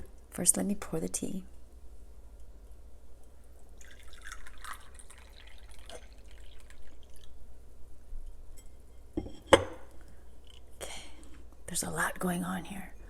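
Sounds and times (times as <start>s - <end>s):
tea pouring into a cup: 3.8s - 7.4s.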